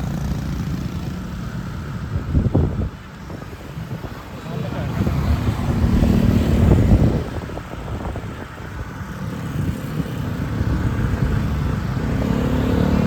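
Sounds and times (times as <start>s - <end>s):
steady traffic noise: 0.0s - 13.0s
vehicle passing close by: 3.3s - 8.4s, 9.1s - 13.0s.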